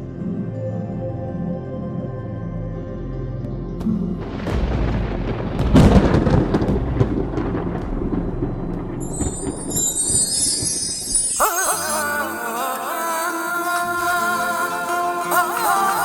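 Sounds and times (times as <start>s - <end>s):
low music drone: 0.0s - 9.8s
thunder rumble with crackles: 3.9s - 11.3s.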